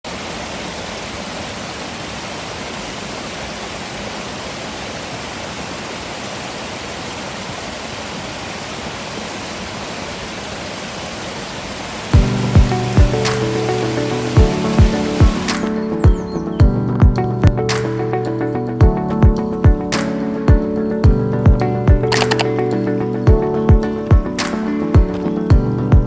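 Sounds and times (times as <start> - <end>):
waterfall rushing: 0.0 - 15.7
soft background music: 12.1 - 26.0.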